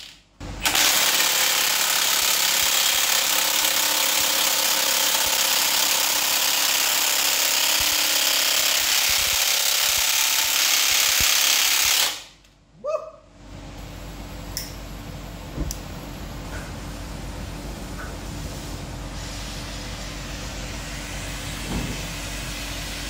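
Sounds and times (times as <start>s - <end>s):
power tool running with rattling hiss: 0.6s - 12.3s.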